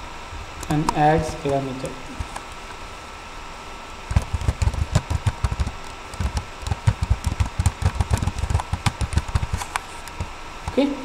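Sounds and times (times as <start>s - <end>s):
faint steady hum: 0.0s - 11.0s
rapid irregular tapping: 0.6s - 2.7s, 4.1s - 10.8s.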